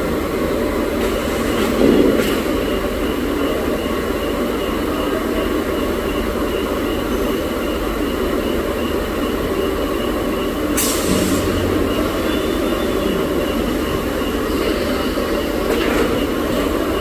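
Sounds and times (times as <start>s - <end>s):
pipe socketing machine running: 10.8s - 13.5s.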